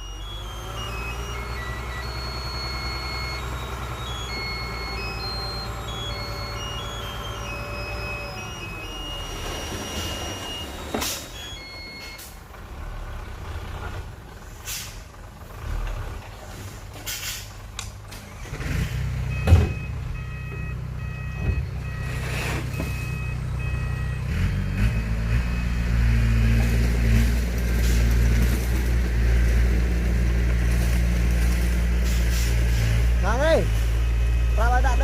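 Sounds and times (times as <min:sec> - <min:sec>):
reversing alarm beeping: 0:00.0 - 0:12.4, 0:19.3 - 0:27.3, 0:33.2 - 0:35.0
heavy diesel engine running: 0:00.0 - 0:35.0.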